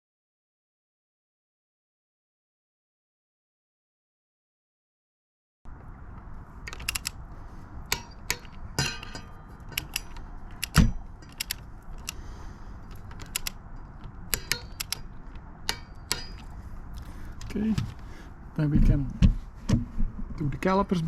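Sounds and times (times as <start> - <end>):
metallic clinks of hand tools: 7.9 - 12.2, 12.9 - 15.1, 15.7 - 16.6.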